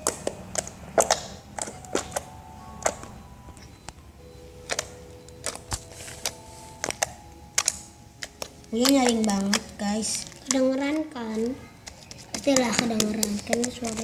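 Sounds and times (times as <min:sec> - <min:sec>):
slime clicking and popping: 0:00.0 - 0:03.1, 0:04.7 - 0:11.1, 0:11.8 - 0:14.0.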